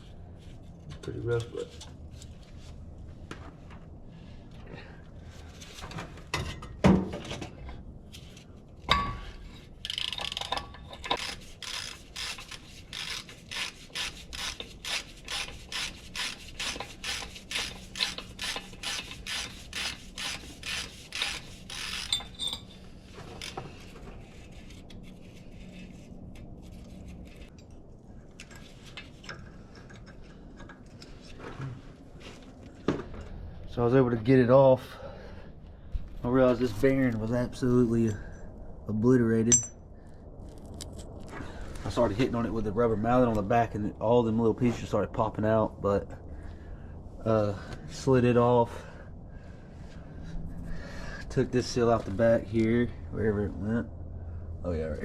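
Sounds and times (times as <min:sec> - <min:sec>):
metal handling: 0:39.5 - 0:39.8.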